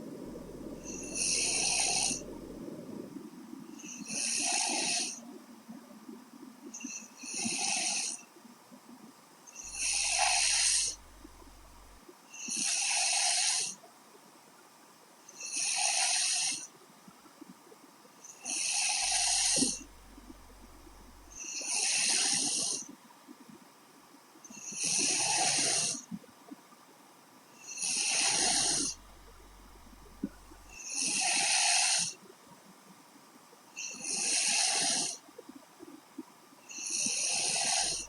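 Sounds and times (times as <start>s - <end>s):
woman snoring: 0.4s - 2.5s, 9.7s - 12.0s, 18.5s - 22.6s, 27.8s - 31.9s, 36.8s - 38.0s.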